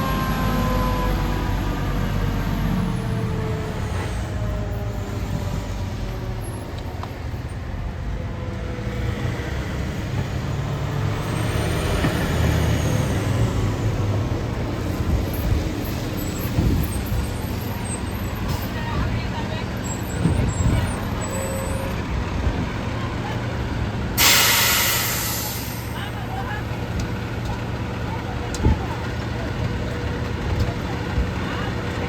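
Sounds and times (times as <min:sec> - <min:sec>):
diesel engine rumbling: 0:00.0 - 0:32.0.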